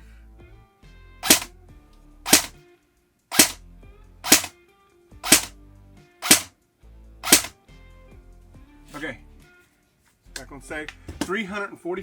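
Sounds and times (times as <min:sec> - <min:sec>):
airsoft gun shots: 0:01.2 - 0:01.5, 0:02.3 - 0:02.6, 0:03.3 - 0:03.6, 0:04.2 - 0:04.5, 0:05.2 - 0:05.5, 0:06.2 - 0:06.5, 0:07.2 - 0:07.5.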